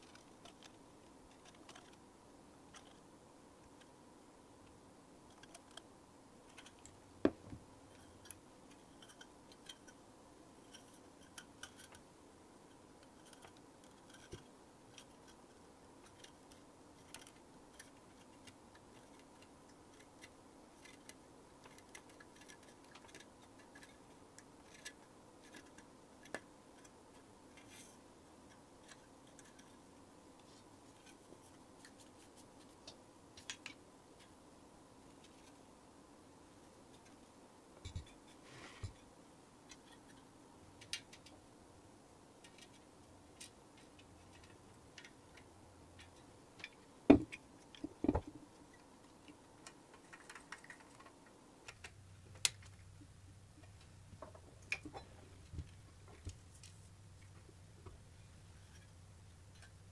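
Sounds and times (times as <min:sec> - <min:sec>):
low steady hum: 0:00.0 - 0:59.9
faint clicks and light taps: 0:42.4 - 0:53.0.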